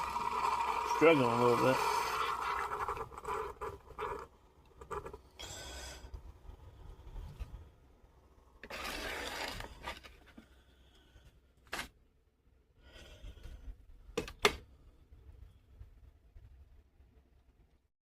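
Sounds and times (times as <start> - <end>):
coffee maker hissing and sputtering: 0.0 - 5.7.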